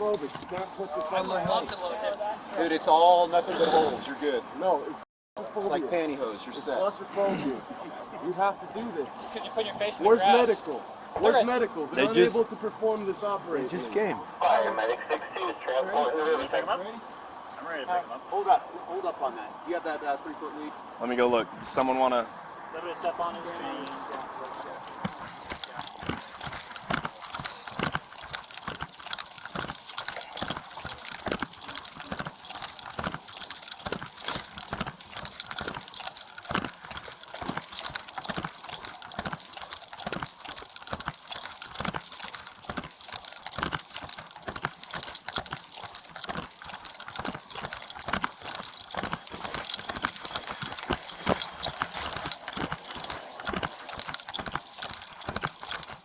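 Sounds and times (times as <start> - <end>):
gear rattling: 0.0 - 2.1, 23.1 - 56.0
footsteps on hard ground: 0.0 - 2.8, 23.1 - 56.0.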